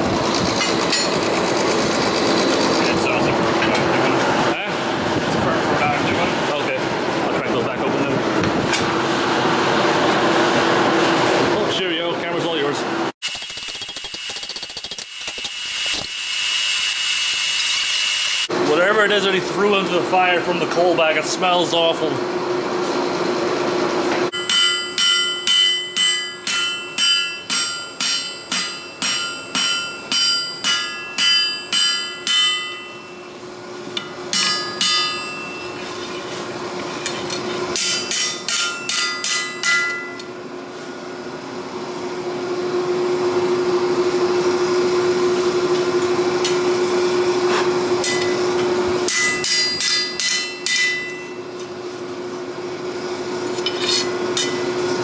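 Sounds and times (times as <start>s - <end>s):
hammer ringing on anvil: 24.3s - 33.3s, 34.0s - 35.8s, 37.8s - 40.3s, 48.0s - 48.4s, 49.1s - 51.4s.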